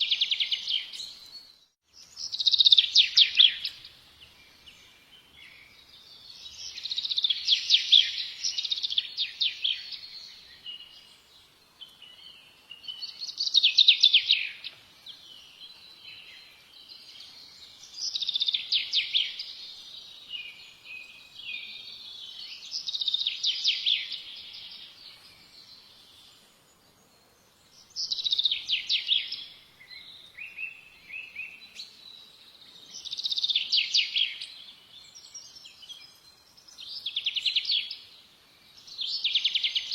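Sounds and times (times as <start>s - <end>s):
soft bird twittering: 0.0s - 39.9s
songbird singing: 0.0s - 39.9s.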